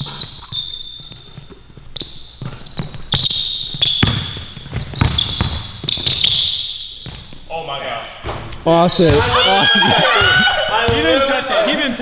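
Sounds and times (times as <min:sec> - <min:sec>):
basketball dribbling on a court: 0:00.0 - 0:07.4
sneaker squeaks on floor: 0:00.0 - 0:07.5, 0:08.2 - 0:11.1.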